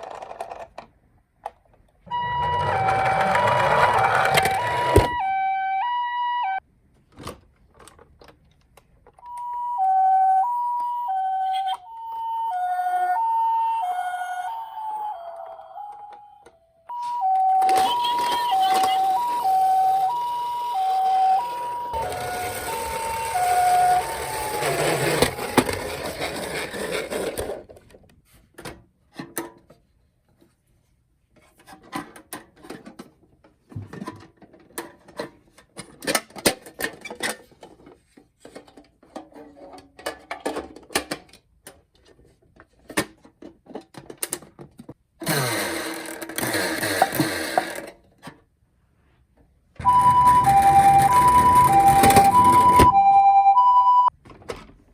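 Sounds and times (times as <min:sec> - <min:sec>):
toy siren two-tone: 0:02.1 - 0:06.6, 0:09.2 - 0:26.1, 0:49.8 - 0:54.1.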